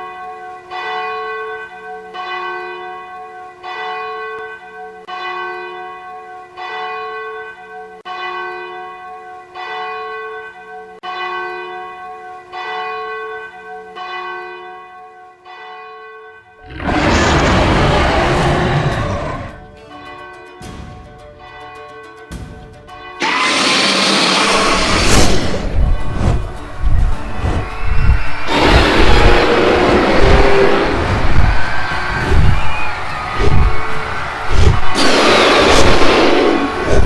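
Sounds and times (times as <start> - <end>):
loud rushing noise: 24.1 - 37.0.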